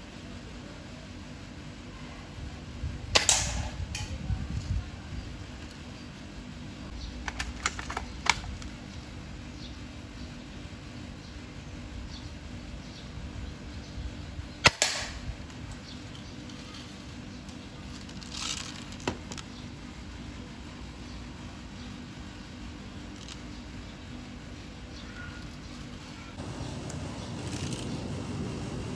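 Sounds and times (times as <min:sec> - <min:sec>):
airsoft gun shot crack: 0:03.2 - 0:04.1, 0:14.6 - 0:15.4.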